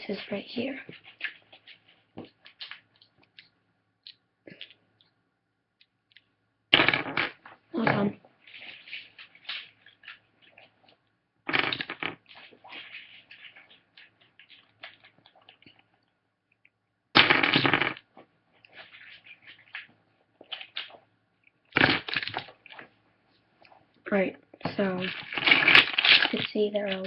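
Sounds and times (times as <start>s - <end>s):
plastic puzzle pieces clicking: 11.5s - 12.2s.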